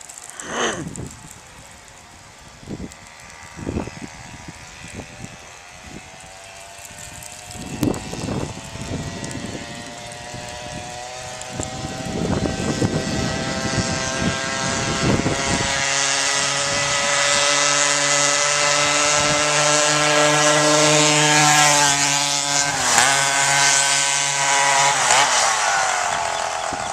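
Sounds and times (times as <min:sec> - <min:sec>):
scooter engine whining: 0:00.0 - 0:01.1, 0:07.4 - 0:26.9.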